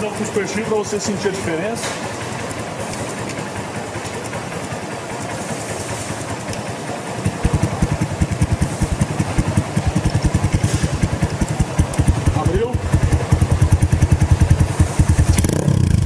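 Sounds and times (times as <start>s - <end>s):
motorcycle engine idling: 0.0s - 16.0s
strong low exhaust pulses: 7.2s - 16.0s.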